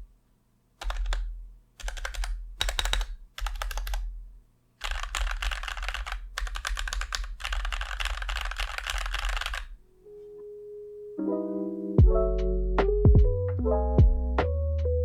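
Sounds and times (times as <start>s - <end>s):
mechanical keyboard typing: 0.8s - 4.1s, 4.8s - 9.8s
faint held musical tone: 9.8s - 12.5s.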